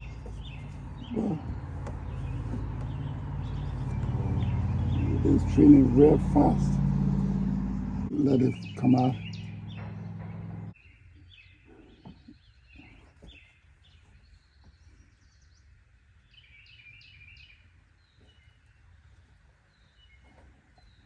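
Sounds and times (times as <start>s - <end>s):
low background rumble: 0.0s - 10.8s
steady low hum: 0.0s - 10.8s
small birds chirping: 0.0s - 21.0s.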